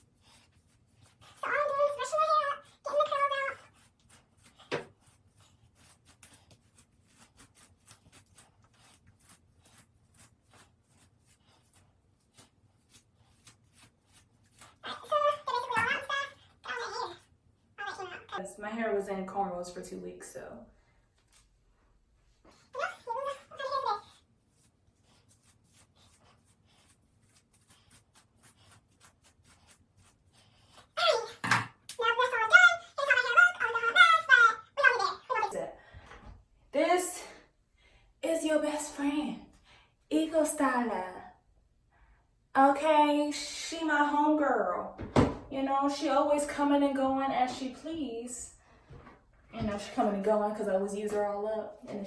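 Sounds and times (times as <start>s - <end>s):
scratchy rustle of fingers through hair: 0.0s - 17.4s, 22.4s - 31.3s.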